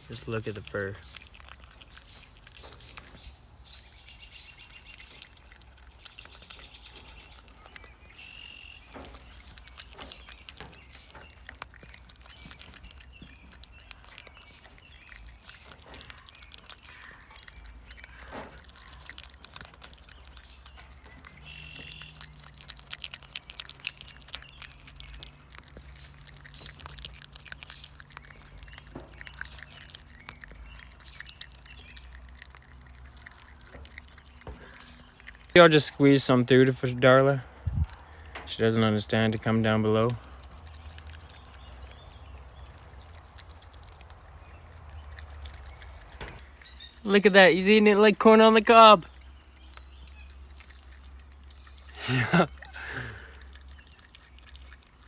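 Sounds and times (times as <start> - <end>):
birds chirping and calling: 0.0 - 55.0
low steady hum: 31.8 - 55.0.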